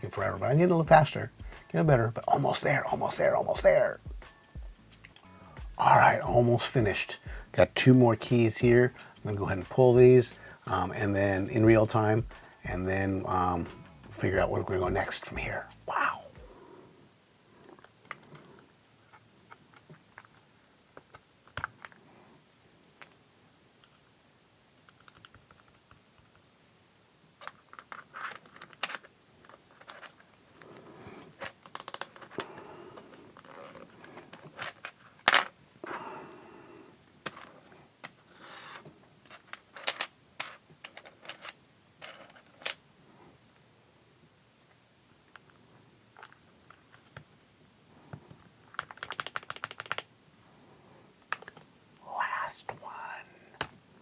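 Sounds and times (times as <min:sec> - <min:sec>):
keycaps clicking and snapping: 0:24.9 - 0:26.4, 0:48.3 - 0:50.1
light plastic clatter and rustling: 0:27.4 - 0:32.5, 0:33.1 - 0:35.6, 0:37.2 - 0:42.8.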